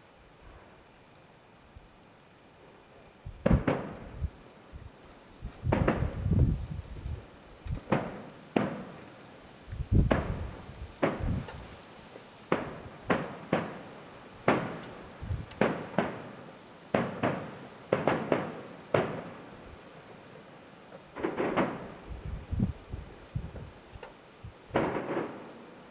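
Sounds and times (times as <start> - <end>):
deep firework boom: 3.3 - 4.4, 5.5 - 7.2, 9.9 - 11.7
distant fireworks bangs echoing: 3.4 - 4.4, 5.6 - 6.5, 7.8 - 11.8, 12.4 - 22.5, 24.7 - 25.9.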